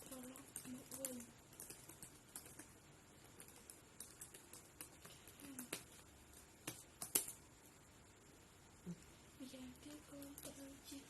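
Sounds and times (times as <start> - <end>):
keyboard typing: 0.0 - 7.4.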